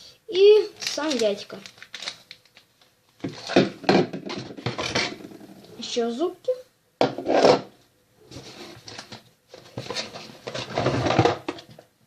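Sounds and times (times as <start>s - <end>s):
rustling of plastic toy pieces: 0.8s - 3.5s.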